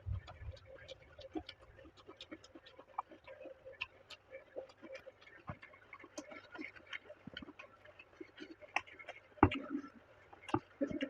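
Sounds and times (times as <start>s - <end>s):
chewing mouth clicks: 0.1s - 7.7s.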